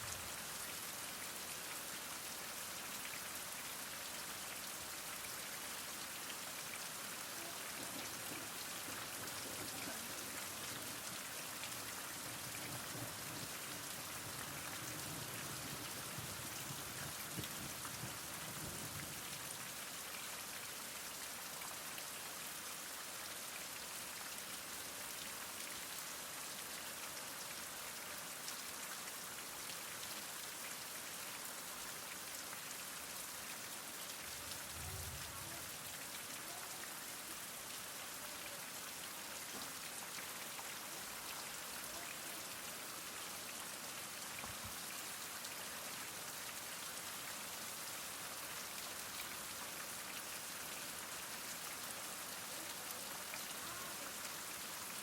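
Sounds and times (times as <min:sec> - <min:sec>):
heavy rain falling: 0:04.6 - 0:19.9, 0:32.6 - 0:55.0.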